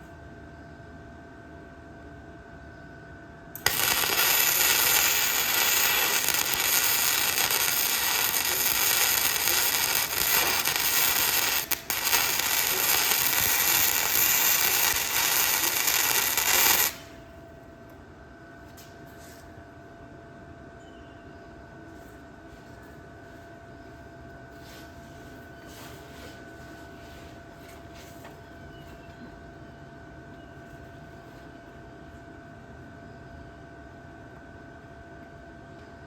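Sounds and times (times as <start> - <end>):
welding arc crackling: 3.6 - 17.2.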